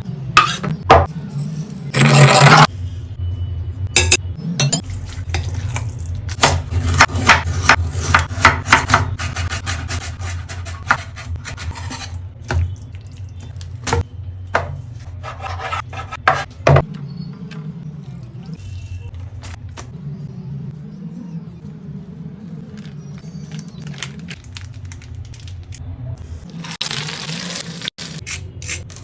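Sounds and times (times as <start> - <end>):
utensils scraping a pan: 9.2 - 12.2, 15.0 - 16.5.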